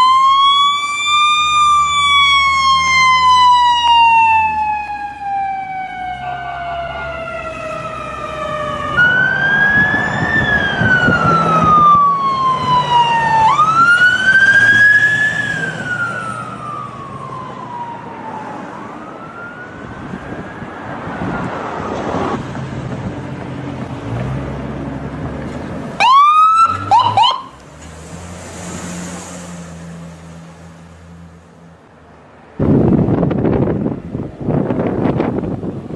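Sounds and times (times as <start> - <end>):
siren yelps: 0.0 - 22.0, 26.0 - 27.6
ambulance siren wailing: 0.0 - 22.4, 26.0 - 27.6.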